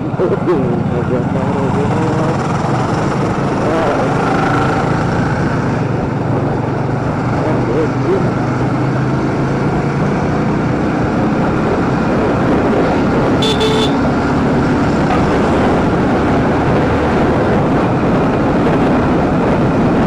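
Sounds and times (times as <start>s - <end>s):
short horn beep: 13.4s - 14.0s
motorcycle engine running: 13.4s - 14.2s
wind rushing on microphone: 14.4s - 20.0s.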